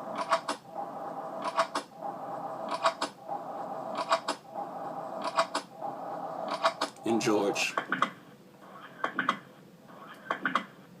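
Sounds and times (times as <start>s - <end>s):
steady hum: 0.0s - 11.0s.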